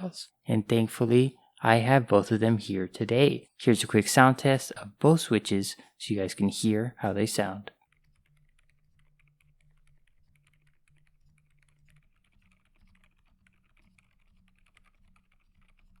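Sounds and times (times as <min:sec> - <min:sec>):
soft keyboard keystrokes: 0:08.0 - 0:16.0.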